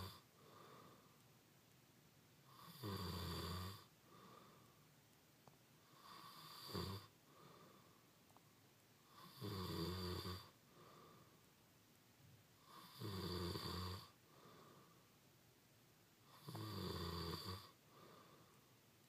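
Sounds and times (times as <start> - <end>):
man snoring: 0.0 - 0.2, 2.5 - 3.9, 6.0 - 7.1, 9.1 - 10.6, 12.6 - 14.2, 16.3 - 17.8
soft breathing: 0.0 - 1.4, 3.8 - 5.1, 5.8 - 9.3, 10.4 - 11.6, 14.0 - 15.3, 17.6 - 19.0.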